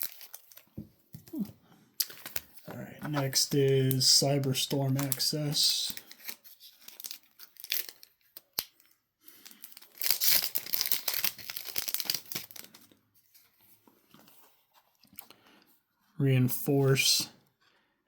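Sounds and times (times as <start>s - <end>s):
foil wrapper tearing and crinkling: 0.0s - 0.7s, 4.9s - 13.0s.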